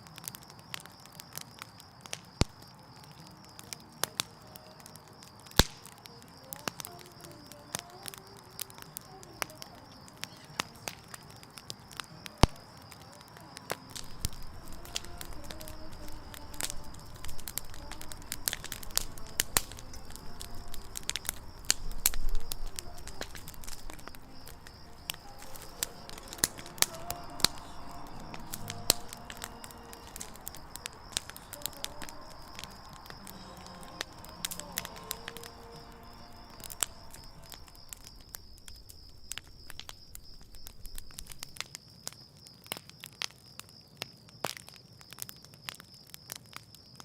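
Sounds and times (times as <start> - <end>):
campfire crackling and popping: 0.0 - 47.0
faint steady high tone: 12.2 - 38.4.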